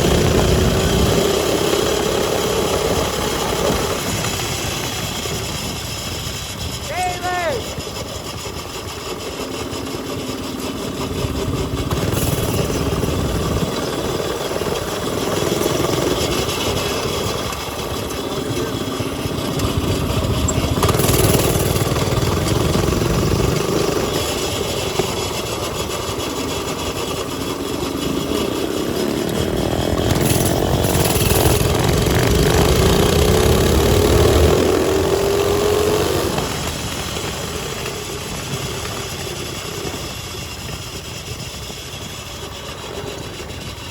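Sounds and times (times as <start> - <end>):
mini bike engines revving: 0.0 - 43.9.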